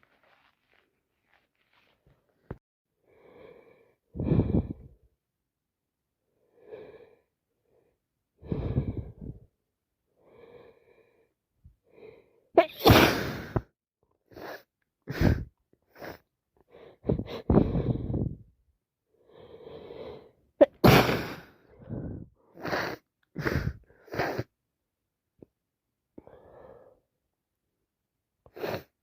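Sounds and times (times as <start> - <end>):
gasping in-breaths: 3.1 - 5.0, 6.4 - 9.5, 14.3 - 18.5, 21.2 - 24.5
woman sneezing: 12.6 - 13.6, 20.6 - 21.4.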